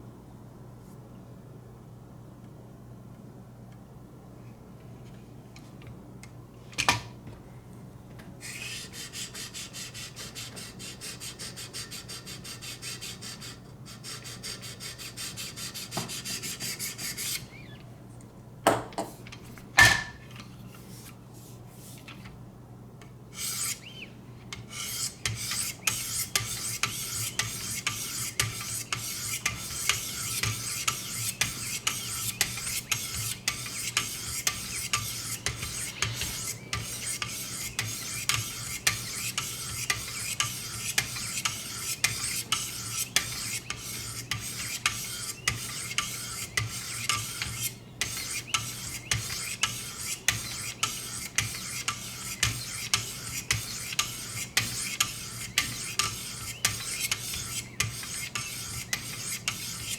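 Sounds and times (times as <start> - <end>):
knife rubbing on sharpening stone: 23.4 - 23.9, 24.7 - 59.9.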